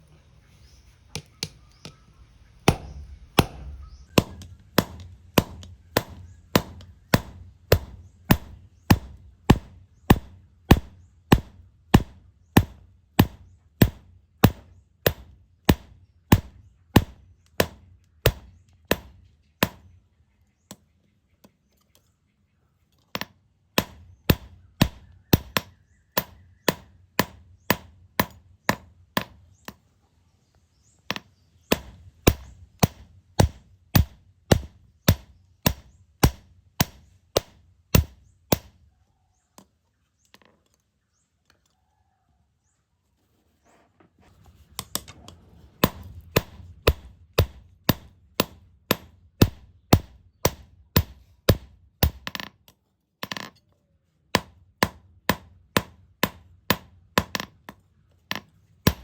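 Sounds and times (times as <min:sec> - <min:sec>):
hammer striking steel on anvil: 0:02.6 - 0:15.8.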